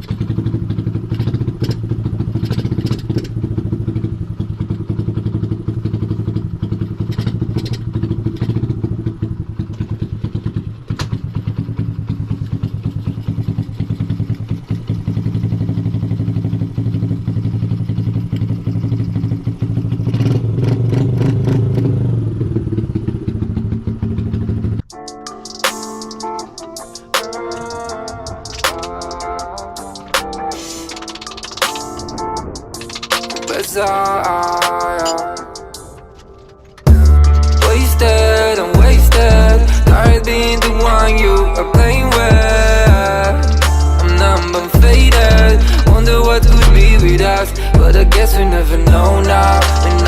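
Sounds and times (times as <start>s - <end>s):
small motorcycle engine running: 0.0s - 24.9s, 36.8s - 49.9s.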